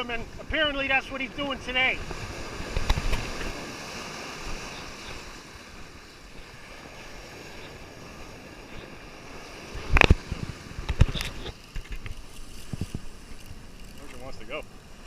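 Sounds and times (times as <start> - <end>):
ocean surf: 0.0 - 15.0
wind noise on microphone: 1.9 - 13.7.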